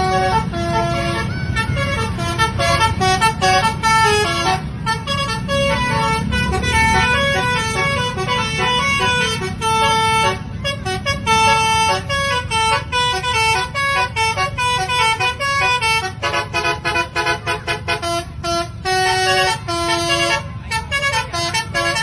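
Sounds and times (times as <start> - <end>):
bus multi-tone air horn melody: 0.0 - 22.0.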